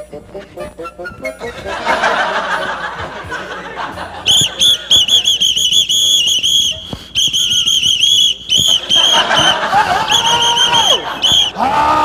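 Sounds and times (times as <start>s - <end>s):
whistle blasts: 4.2s - 11.6s.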